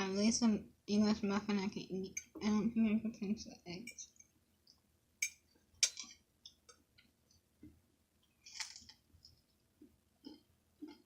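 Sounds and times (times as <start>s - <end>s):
person chewing: 8.4s - 11.0s.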